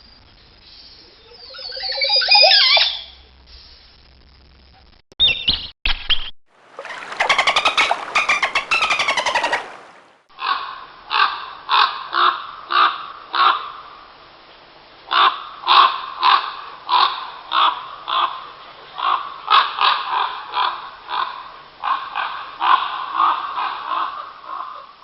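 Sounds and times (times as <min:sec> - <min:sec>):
bird calls chattering: 0:01.2 - 0:03.1, 0:06.8 - 0:10.0
crow cawing: 0:09.0 - 0:13.8, 0:15.1 - 0:18.4.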